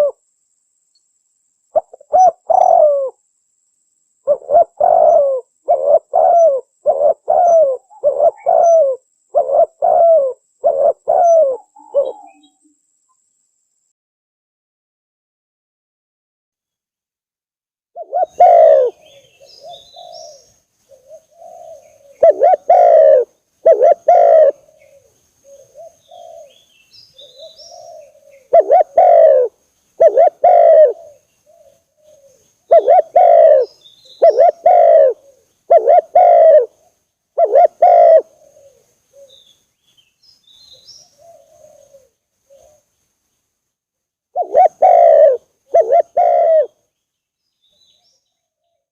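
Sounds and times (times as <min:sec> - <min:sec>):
dove cooing: 0:00.0 - 0:00.2, 0:01.8 - 0:03.2, 0:04.2 - 0:12.6, 0:18.0 - 0:39.5, 0:40.6 - 0:42.9, 0:44.4 - 0:46.8
small birds chirping: 0:04.2 - 0:13.3, 0:18.0 - 0:43.6, 0:44.4 - 0:48.9.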